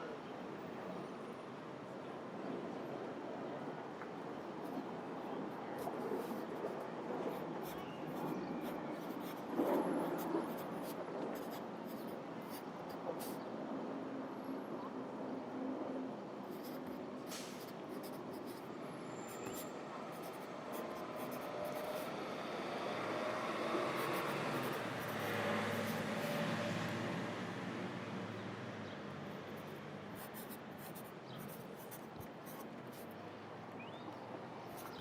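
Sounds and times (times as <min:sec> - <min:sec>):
city traffic hum: 0:00.0 - 0:35.0
pencil scratching on paper: 0:05.6 - 0:13.4, 0:16.5 - 0:22.2, 0:22.8 - 0:26.7, 0:29.3 - 0:33.1, 0:34.7 - 0:35.0.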